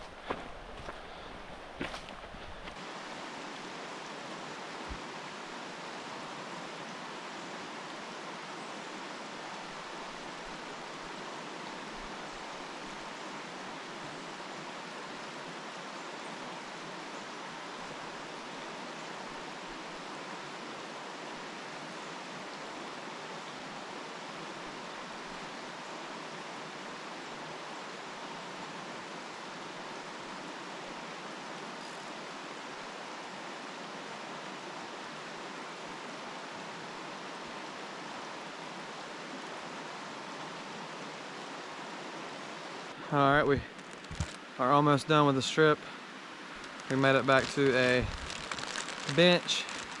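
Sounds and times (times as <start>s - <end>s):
stream rushing: 0.0s - 50.0s.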